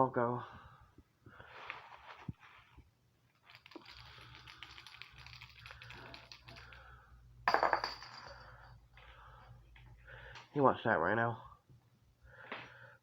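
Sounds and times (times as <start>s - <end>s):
toy ball clatter: 3.4s - 6.9s
toy ball clicking and rattling: 3.4s - 6.9s.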